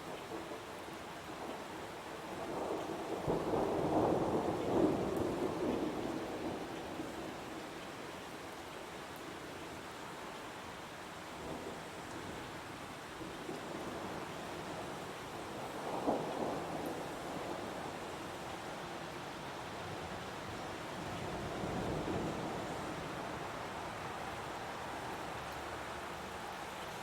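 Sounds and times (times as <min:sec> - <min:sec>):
heavy rain falling: 0:00.1 - 0:27.0.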